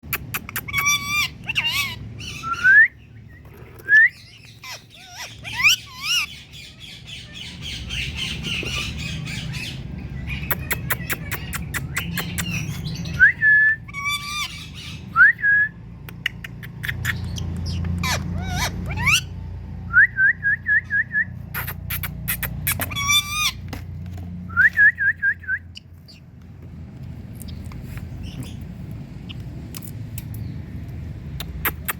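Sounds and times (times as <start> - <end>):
parakeet squawking: 0.1 - 13.2, 13.9 - 15.2, 16.4 - 19.4, 21.5 - 23.7
parakeet whistles: 0.5 - 3.1.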